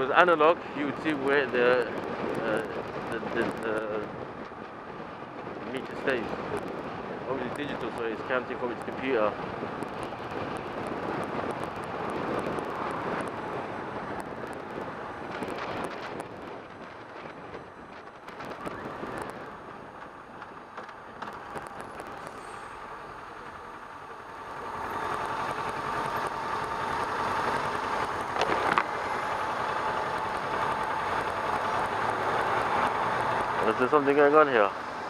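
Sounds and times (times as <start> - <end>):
road and wind noise: 0.0 - 35.0
motorcycle engine running: 18.4 - 34.1.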